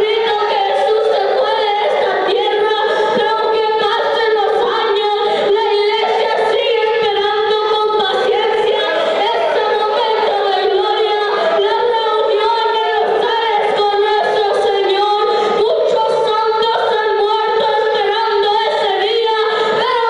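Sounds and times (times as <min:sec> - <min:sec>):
group of voices singing: 0:07.8 - 0:13.8.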